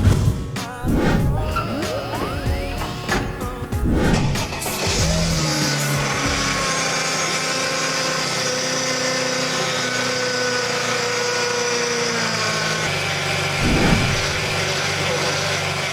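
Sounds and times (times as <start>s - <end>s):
low engine rumble: 0.0s - 6.8s, 13.6s - 14.7s
car engine idling: 1.2s - 15.9s.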